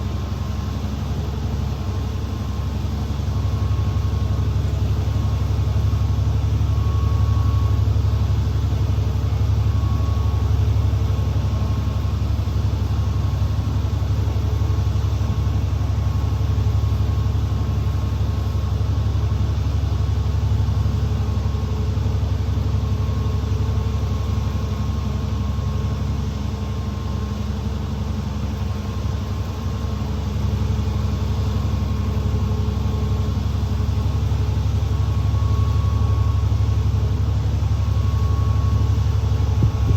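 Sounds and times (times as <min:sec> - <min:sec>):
bus engine running: 0:00.0 - 0:39.9.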